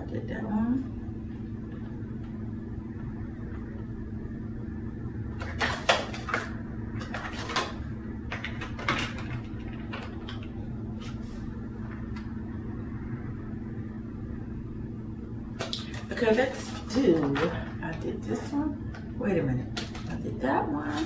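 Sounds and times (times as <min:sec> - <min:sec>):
steady low hum: 0:00.0 - 0:21.0
chocolate box packaging rustling: 0:05.4 - 0:10.5.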